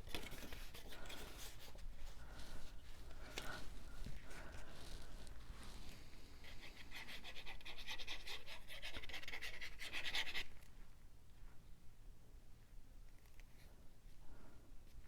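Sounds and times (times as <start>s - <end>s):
scratchy rubbing on cardstock: 6.4s - 10.5s.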